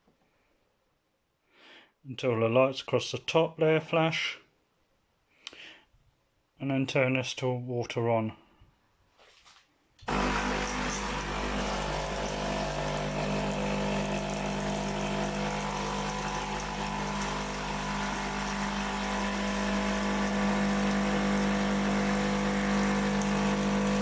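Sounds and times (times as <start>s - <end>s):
coffee machine pump humming: 10.1s - 24.0s.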